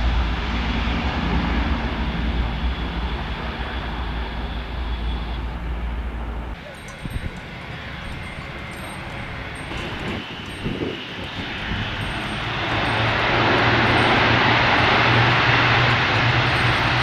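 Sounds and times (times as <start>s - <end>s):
turboprop aircraft engine drone: 0.0s - 17.0s.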